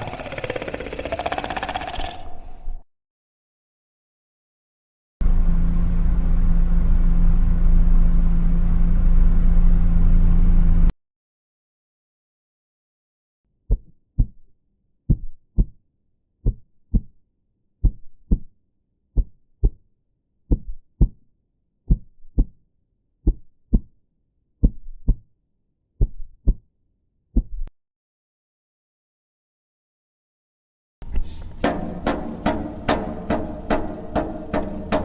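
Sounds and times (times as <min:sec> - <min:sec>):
heartbeat double thumps: 0:15.1 - 0:15.8, 0:31.5 - 0:35.0.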